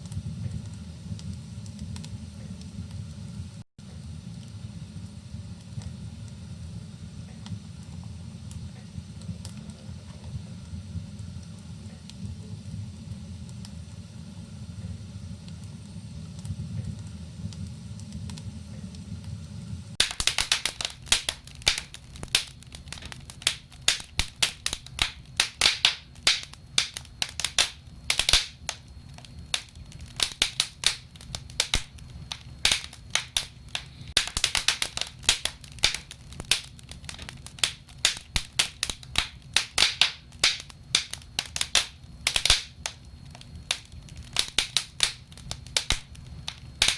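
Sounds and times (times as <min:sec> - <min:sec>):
wood fire crackling: 0:00.0 - 0:46.9
steady low rumble: 0:16.5 - 0:46.9.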